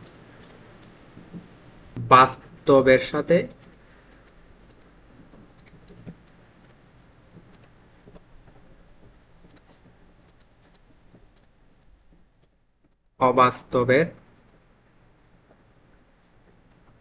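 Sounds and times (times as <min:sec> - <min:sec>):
low room hiss: 0:00.0 - 0:17.0
pen clicks and taps writing: 0:03.5 - 0:13.0.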